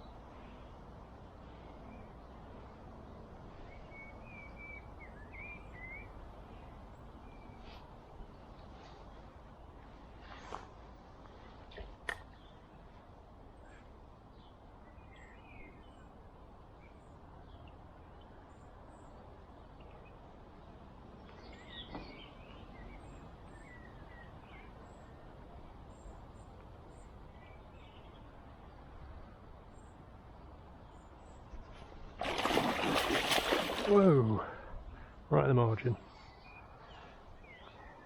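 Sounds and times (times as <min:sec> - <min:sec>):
small birds chirping: 0:11.3 - 0:38.0.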